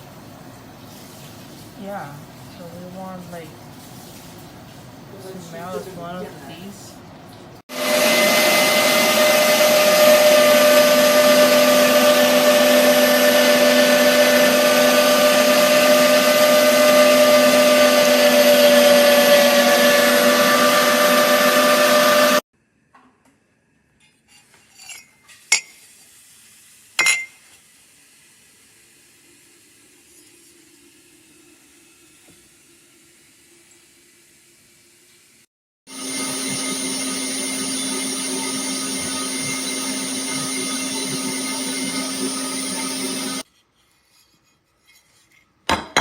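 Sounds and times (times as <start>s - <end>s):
electric meat grinder motor humming: 7.7s - 22.4s, 35.9s - 43.5s.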